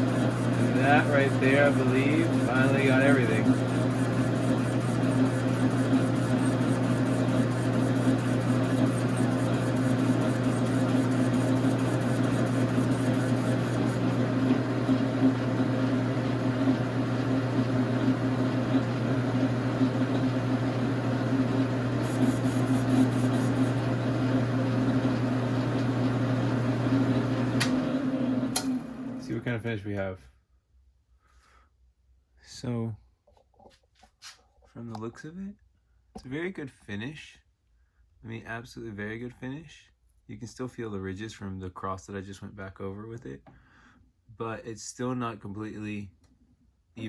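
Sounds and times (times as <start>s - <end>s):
lathe motor humming: 0.0s - 29.5s.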